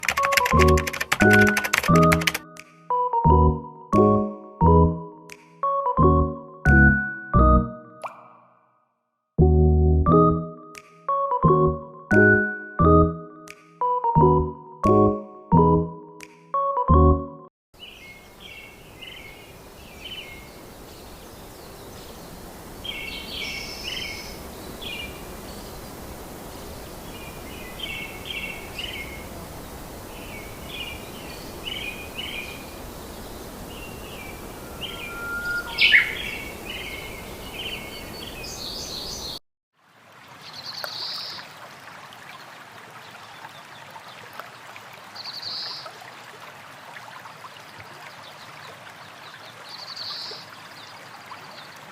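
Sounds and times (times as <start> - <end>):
small birds chirping: 17.8 - 39.4
outdoor background hiss: 17.8 - 42.4
bird high calls: 30.2 - 39.4.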